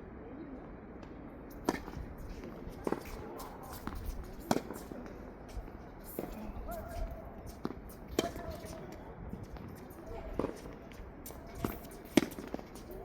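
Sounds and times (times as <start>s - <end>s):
tennis balls struck by rackets: 1.0s - 13.0s
wind rumble on microphone: 1.8s - 4.5s, 5.5s - 11.7s.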